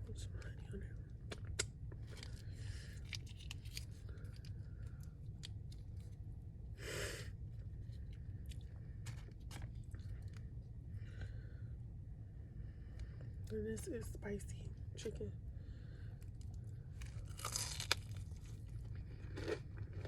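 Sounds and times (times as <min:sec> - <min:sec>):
steady low hum: 0:00.0 - 0:20.0
chewing crunchy food: 0:01.1 - 0:06.2, 0:07.7 - 0:10.5, 0:16.2 - 0:20.0.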